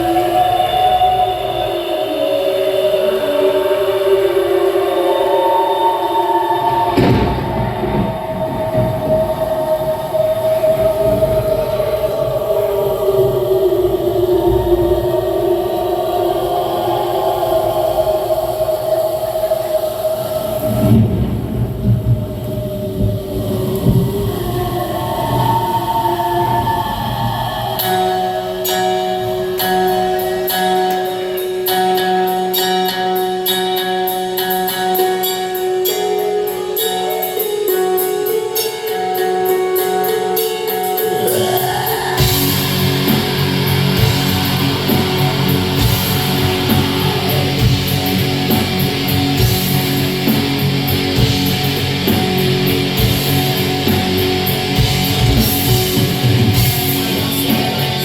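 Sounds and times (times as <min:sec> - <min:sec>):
sustained guitar notes: 0:26.4 - 0:58.0
metal band playing live: 0:27.2 - 0:58.0
distorted guitars and drums: 0:40.7 - 0:58.0.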